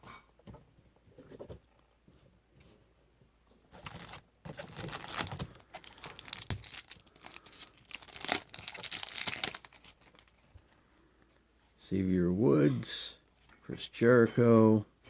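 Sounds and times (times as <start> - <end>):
wrapper tearing and crinkling: 3.8 - 10.4.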